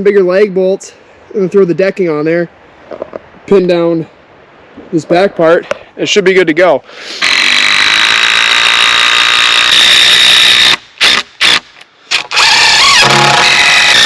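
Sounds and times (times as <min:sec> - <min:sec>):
power driver driving bolts into wood: 0:07.2 - 0:14.0.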